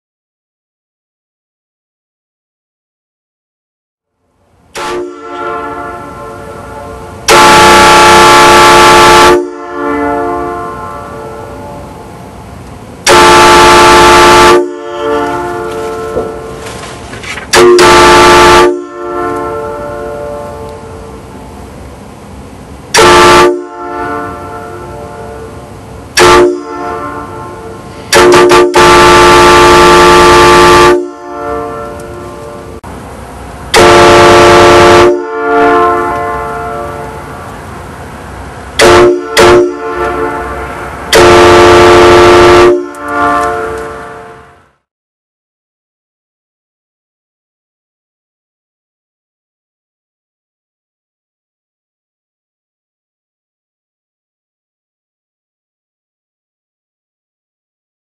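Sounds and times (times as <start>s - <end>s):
train air horn chord: 4.7s - 11.9s, 13.0s - 16.6s, 17.5s - 21.2s, 22.9s - 25.6s, 26.2s - 32.8s, 33.7s - 37.3s, 38.8s - 44.8s.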